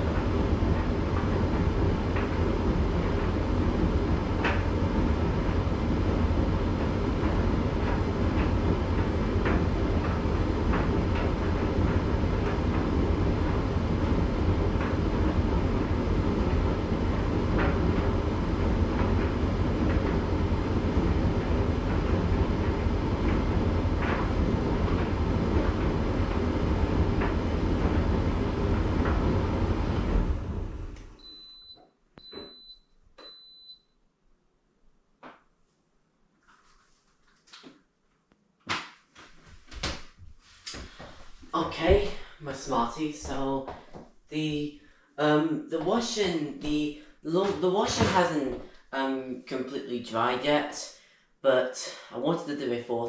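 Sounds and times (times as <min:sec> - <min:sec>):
tumble dryer drum rumbling: 0:00.0 - 0:31.5, 0:39.6 - 0:49.4
high end-of-cycle beep: 0:31.2 - 0:33.8.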